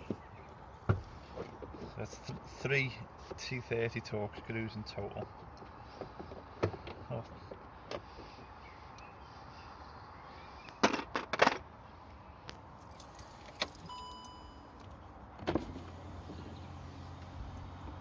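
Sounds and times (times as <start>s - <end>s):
metallic clatters of keys: 12.8s - 15.0s
short electronic beep: 13.9s - 14.7s.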